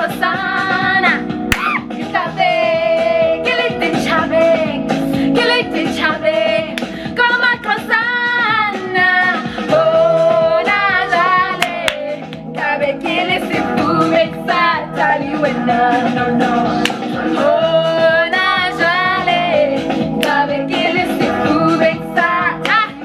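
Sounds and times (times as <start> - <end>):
song with sung vocals: 0.0 - 23.0.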